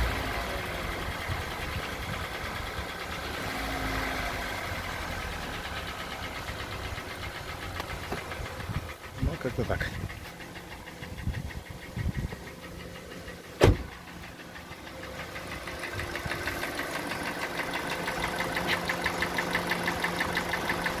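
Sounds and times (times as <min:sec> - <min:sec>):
engine running with rhythmic knock: 0:00.0 - 0:21.0
sharp bang: 0:13.6 - 0:13.9.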